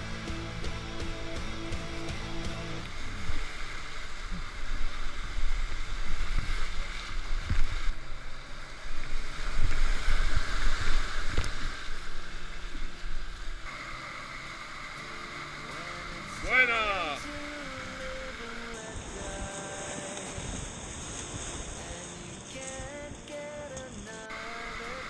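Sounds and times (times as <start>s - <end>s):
river water rushing and splashing: 0.0s - 25.0s
wind rumbling on microphone: 2.8s - 13.7s, 17.2s - 23.3s.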